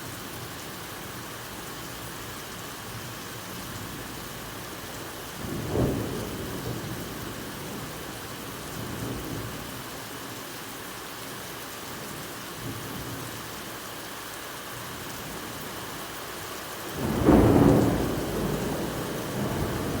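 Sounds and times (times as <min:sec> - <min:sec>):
steady rain falling: 0:00.0 - 0:20.0
thunder rumbling: 0:16.8 - 0:20.0.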